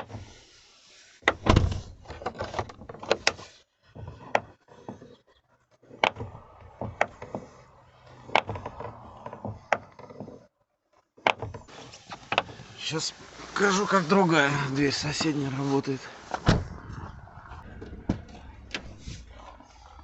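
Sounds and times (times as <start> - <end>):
car door opening and shutting: 0.0 - 0.5, 1.2 - 5.0, 5.9 - 10.5, 11.2 - 12.9, 14.9 - 19.6.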